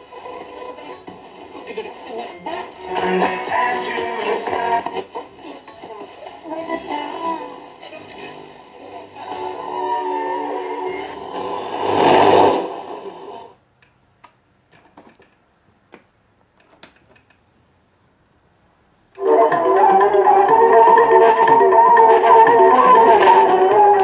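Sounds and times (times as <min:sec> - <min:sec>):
music playing: 0:00.0 - 0:13.5, 0:19.2 - 0:24.0.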